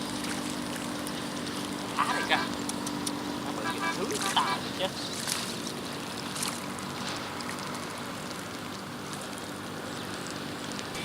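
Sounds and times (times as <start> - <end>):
light ticks: 2.5 - 3.2.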